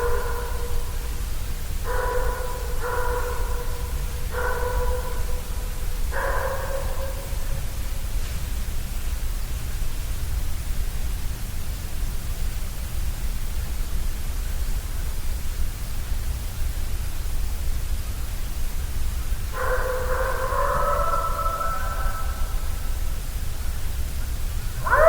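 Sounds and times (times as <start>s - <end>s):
even hiss: 0.0s - 25.0s.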